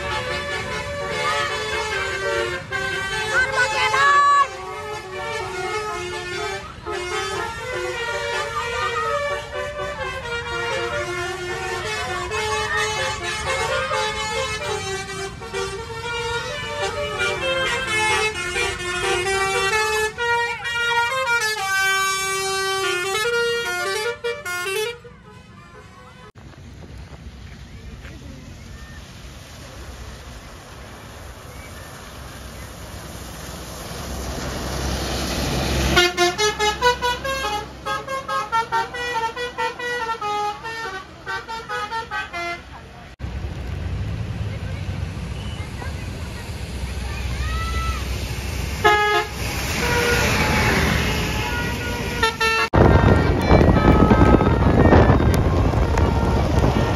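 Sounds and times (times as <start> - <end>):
musical air horn melody: 0.0 - 25.5, 35.8 - 42.7, 48.8 - 54.7
low engine and road noise: 0.0 - 56.9
vehicle approaching: 26.4 - 56.9
melodic horn tune: 48.8 - 53.2.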